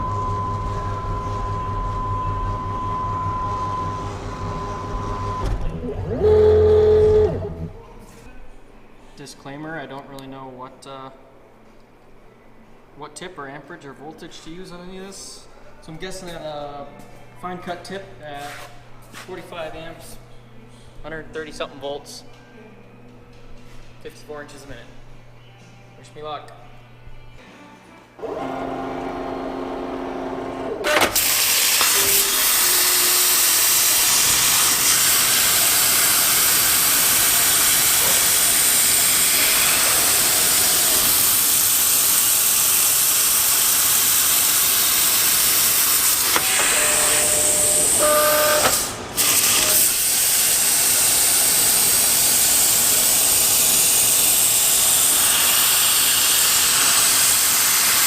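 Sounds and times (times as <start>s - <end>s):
plasma cutting arc hiss: 31.2s - 48.6s, 49.2s - 58.0s.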